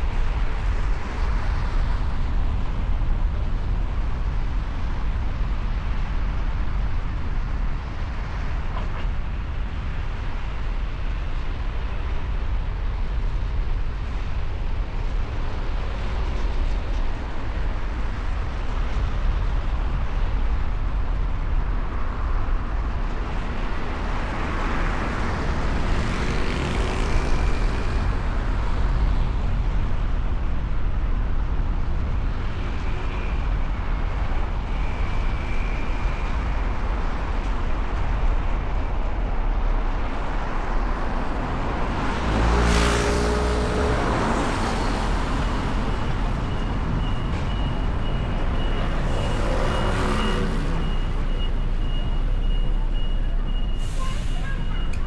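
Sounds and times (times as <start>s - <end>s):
vehicles passing: 21.4s - 32.9s, 36.3s - 55.0s
loud high-pitched vehicle passing: 23.8s - 28.4s, 41.9s - 52.9s.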